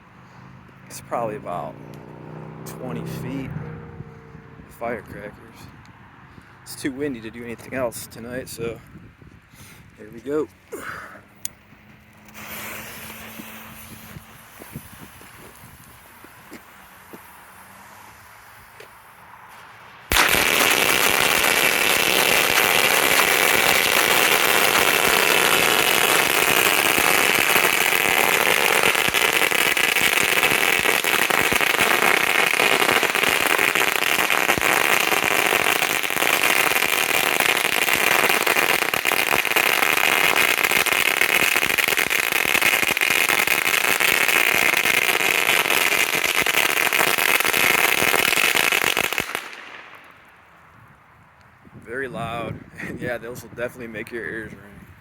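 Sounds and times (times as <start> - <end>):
firecrackers crackling: 9.6 - 50.8.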